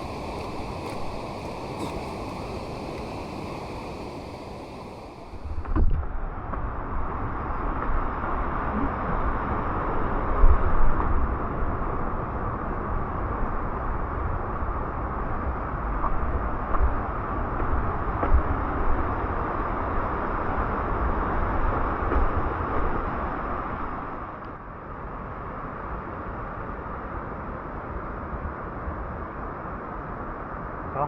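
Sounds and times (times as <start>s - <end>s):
rushing mountain stream: 0.0s - 5.8s
faint clicks: 0.0s - 5.9s.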